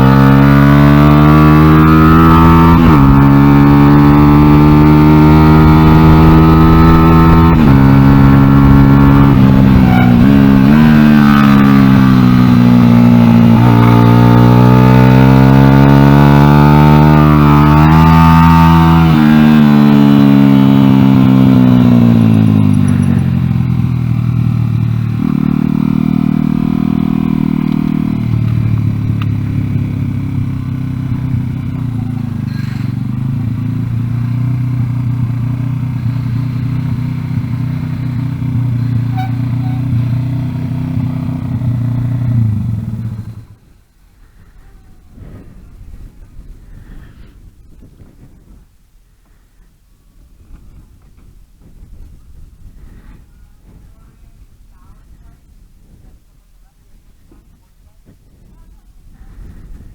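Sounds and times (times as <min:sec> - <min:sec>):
motorcycle engine shifting gears: 0:00.0 - 0:43.6.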